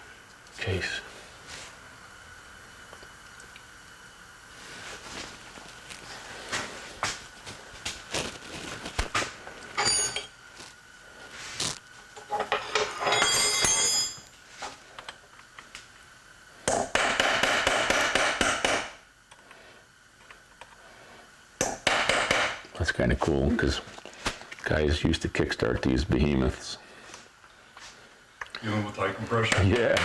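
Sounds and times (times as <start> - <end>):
metal tools clinking on engine parts: 9.7 - 10.4, 12.2 - 14.4
metal parts clattering: 9.8 - 10.3, 12.3 - 14.3.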